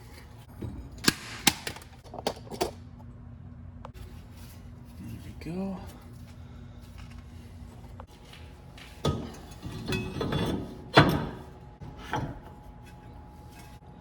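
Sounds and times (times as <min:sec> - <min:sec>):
metal knocks and clatter: 0:08.1 - 0:12.6.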